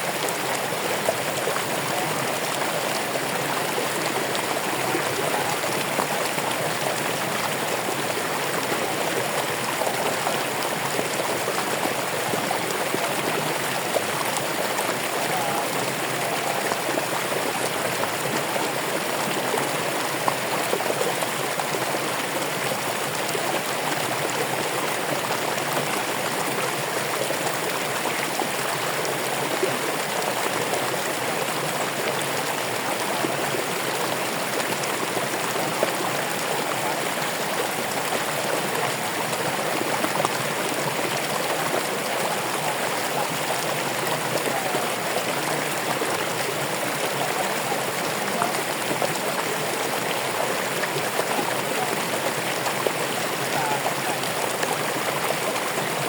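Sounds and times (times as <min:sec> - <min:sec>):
running water: 0:00.0 - 0:56.0.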